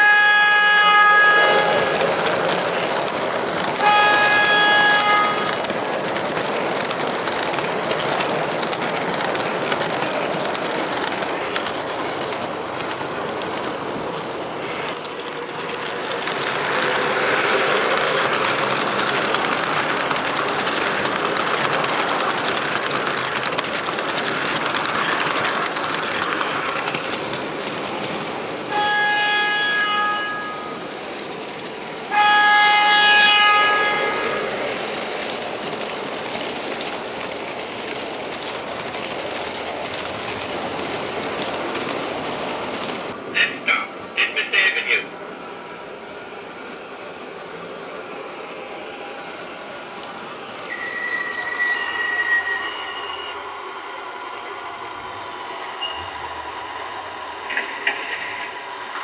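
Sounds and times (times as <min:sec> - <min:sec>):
train horn: 0:00.0 - 0:02.1, 0:03.8 - 0:05.8, 0:28.6 - 0:30.9, 0:32.0 - 0:34.6
model train rumbling on track: 0:00.0 - 0:59.0.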